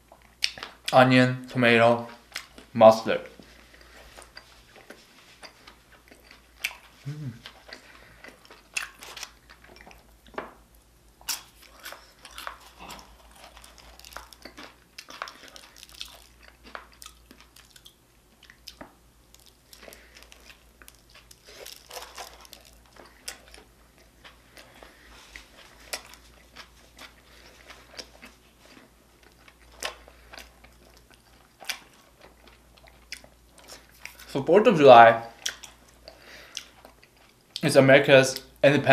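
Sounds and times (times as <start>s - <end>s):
chewing and biting food: 3.4s - 10.4s, 11.2s - 34.3s, 35.3s - 37.6s.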